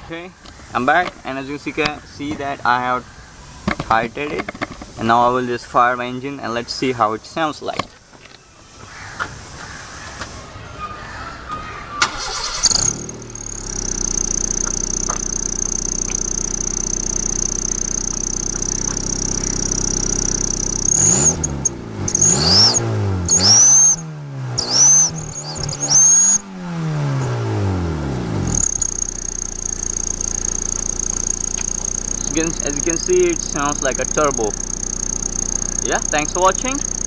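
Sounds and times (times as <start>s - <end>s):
car engine idling and revving: 11.5s - 37.0s
high exhaust whistle: 12.2s - 27.8s, 28.4s - 37.0s.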